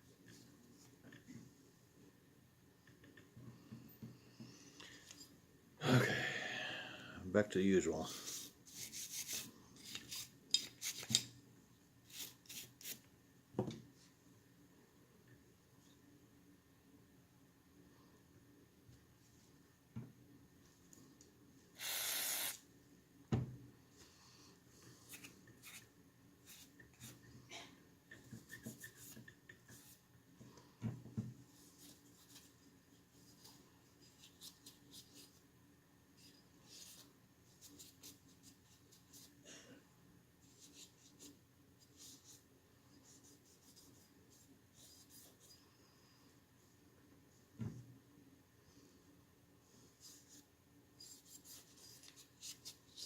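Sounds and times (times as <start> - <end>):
spray hiss: 21.8 - 22.6.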